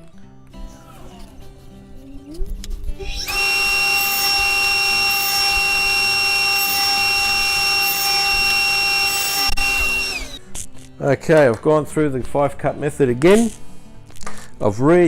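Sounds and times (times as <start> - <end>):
table saw motor whining: 3.0 - 10.4.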